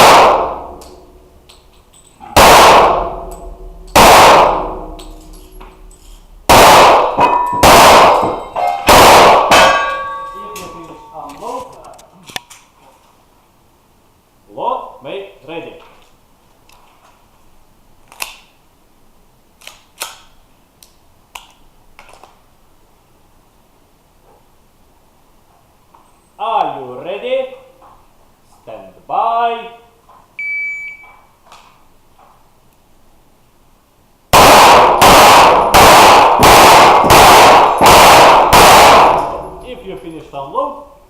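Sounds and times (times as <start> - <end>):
rapid pistol shots echoing: 0.0 - 1.4, 2.3 - 10.0, 34.3 - 40.0.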